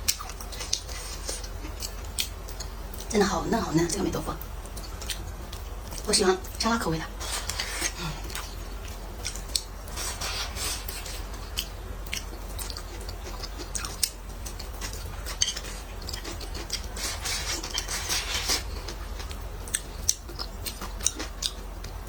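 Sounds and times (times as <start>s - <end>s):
chewing: 0.0s - 3.1s, 3.7s - 6.6s, 7.2s - 22.0s
utensils scraping: 15.3s - 18.7s.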